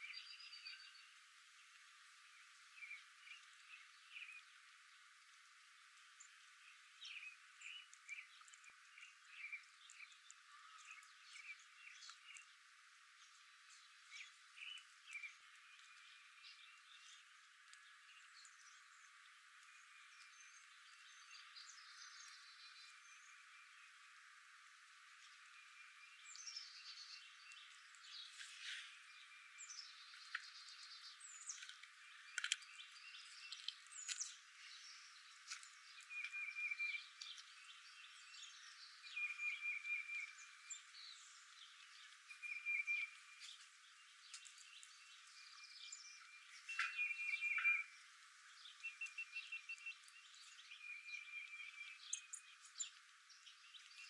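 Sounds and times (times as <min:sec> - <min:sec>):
wild birds chirping: 0:00.0 - 0:54.0
bird trill: 0:45.9 - 0:47.9.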